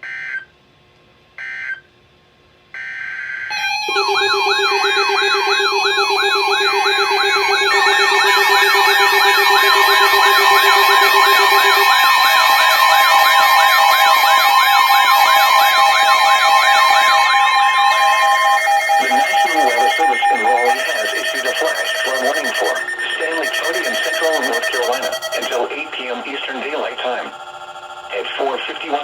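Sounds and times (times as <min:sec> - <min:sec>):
steady siren tones: 0:02.8 - 0:29.0
wailing electronic siren: 0:02.8 - 0:29.0.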